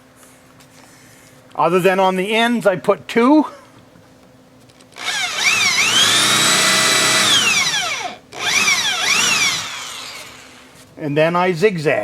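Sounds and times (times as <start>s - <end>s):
power drill driving screws: 5.0s - 10.6s.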